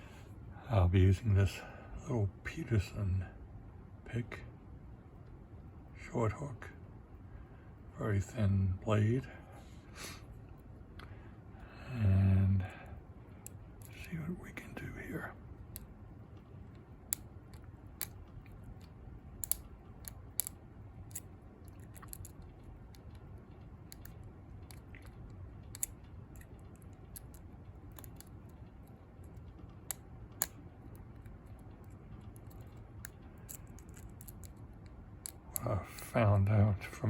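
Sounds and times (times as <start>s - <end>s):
faint low hum: 0.0s - 37.0s
lock pick clicking and scraping: 13.4s - 14.0s, 16.7s - 35.7s.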